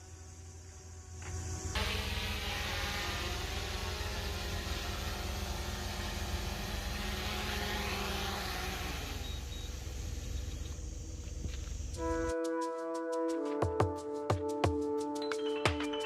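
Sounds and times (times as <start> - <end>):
electric motor whine: 0.0 - 11.9.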